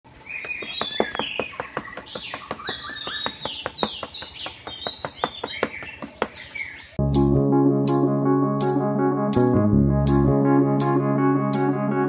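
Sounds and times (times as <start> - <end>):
birds chirping: 0.1 - 7.0.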